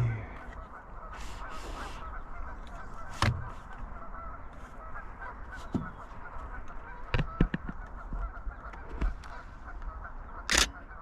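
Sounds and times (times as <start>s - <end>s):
ducks calling: 0.0s - 11.0s
geese honking: 0.0s - 11.0s
sharp clicks: 10.5s - 10.8s.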